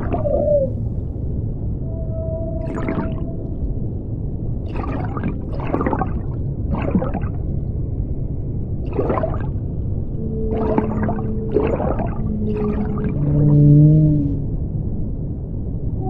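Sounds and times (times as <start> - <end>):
deep steady rumble: 0.0 - 16.0
crackling noise bursts: 4.5 - 8.0, 8.8 - 13.6.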